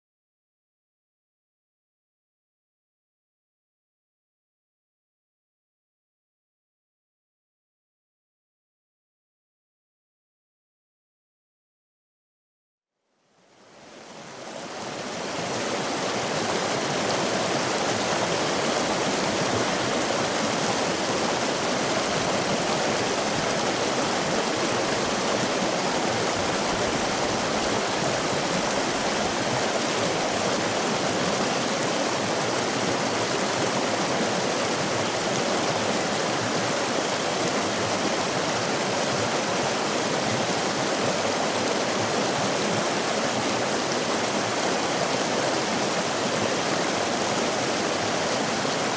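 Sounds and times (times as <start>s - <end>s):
stream water rushing: 13.4s - 48.9s.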